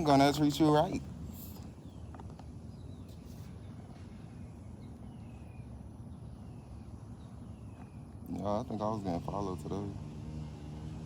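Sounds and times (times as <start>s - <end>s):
faint bird chirps: 1.2s - 8.8s.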